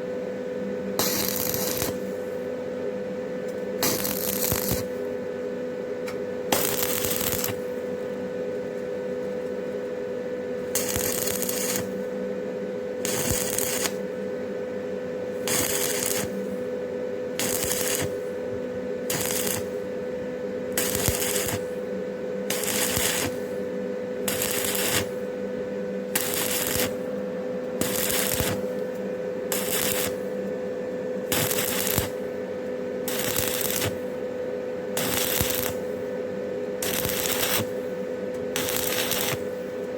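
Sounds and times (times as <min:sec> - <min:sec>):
steady hum: 0:00.0 - 0:39.9
welding arc crackling: 0:01.0 - 0:02.1, 0:03.8 - 0:05.0, 0:06.5 - 0:07.8, 0:10.6 - 0:12.0, 0:13.0 - 0:14.0, 0:15.3 - 0:16.6, 0:17.4 - 0:18.4, 0:19.1 - 0:19.9, 0:20.7 - 0:21.8, 0:22.5 - 0:23.6, 0:24.2 - 0:25.3, 0:26.1 - 0:27.1, 0:27.8 - 0:28.9, 0:29.5 - 0:30.4, 0:31.3 - 0:32.2, 0:33.1 - 0:34.1, 0:35.0 - 0:36.1, 0:36.8 - 0:37.8, 0:38.6 - 0:39.6.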